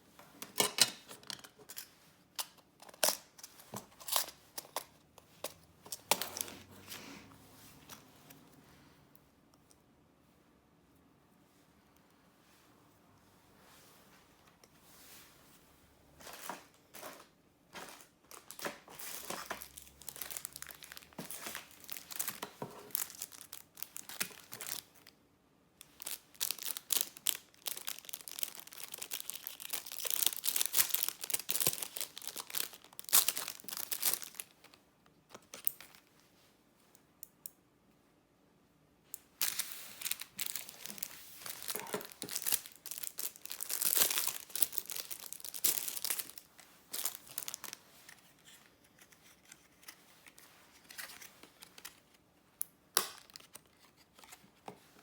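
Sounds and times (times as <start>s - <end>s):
packaging crinkled and torn: 18.0s - 25.1s, 25.8s - 34.8s, 39.4s - 52.2s.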